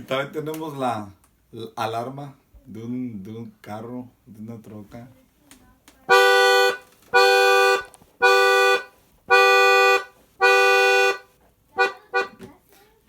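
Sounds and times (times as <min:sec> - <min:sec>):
accordion chord blasts: 0:06.1 - 0:12.4.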